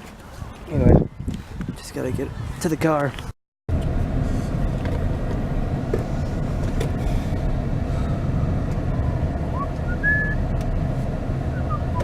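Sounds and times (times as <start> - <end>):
car road rumble from cabin: 3.7 - 12.0.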